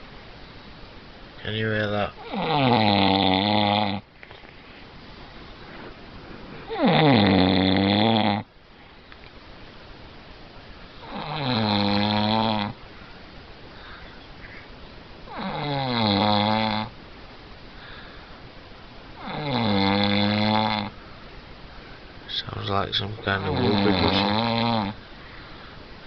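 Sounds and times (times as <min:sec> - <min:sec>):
man snoring: 0:02.2 - 0:04.0, 0:06.7 - 0:08.4, 0:11.0 - 0:12.8, 0:15.4 - 0:16.9, 0:19.2 - 0:20.9, 0:23.4 - 0:25.0.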